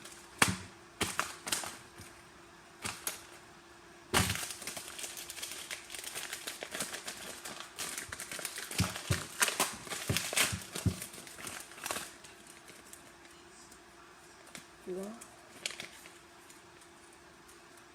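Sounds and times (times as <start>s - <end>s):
paper rustling and crinkling: 4.2s - 13.8s, 15.5s - 17.9s.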